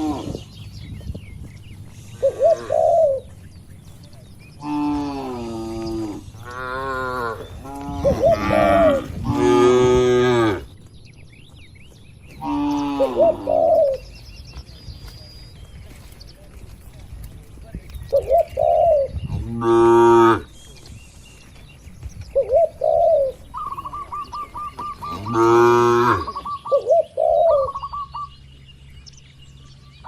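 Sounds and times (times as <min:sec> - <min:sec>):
cows mooing: 0:00.0 - 0:00.5, 0:04.6 - 0:10.8, 0:12.4 - 0:13.7, 0:19.3 - 0:20.5, 0:24.9 - 0:26.5.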